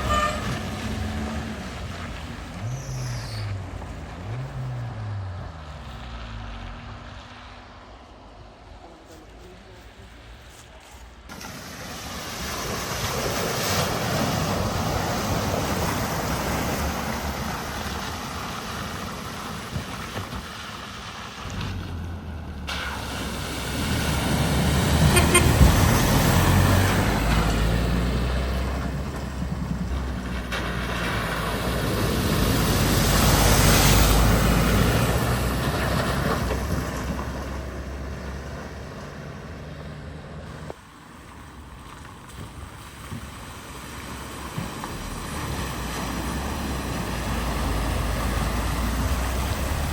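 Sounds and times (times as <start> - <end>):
deep engine rumble: 0.0 - 7.9
vehicle engines running: 0.0 - 49.9
water rushing around wheels: 0.0 - 49.9.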